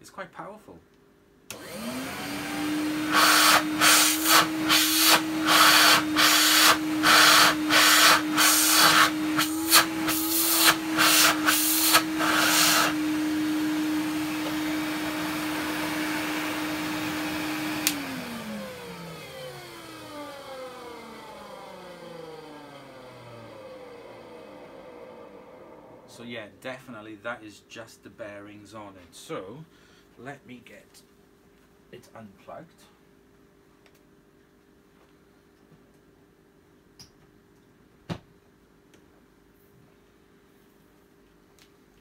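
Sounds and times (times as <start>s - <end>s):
vacuum cleaner motor whine: 1.5s - 26.2s
vacuum cleaner switch click: 17.8s - 18.1s.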